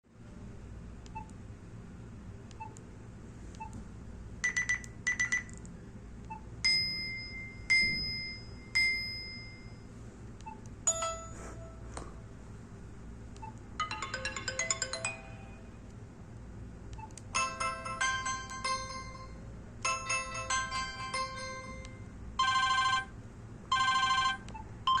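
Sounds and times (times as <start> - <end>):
electronic ringtone melodies: 10.9 - 11.8, 13.8 - 15.8, 17.4 - 23.1, 23.7 - 25.0.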